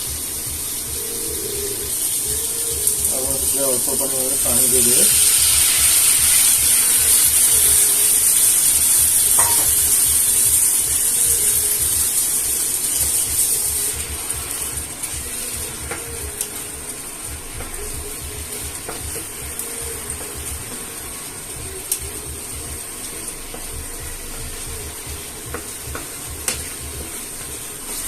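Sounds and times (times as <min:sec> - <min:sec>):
food sizzling in a pan: 0:00.0 - 0:28.0.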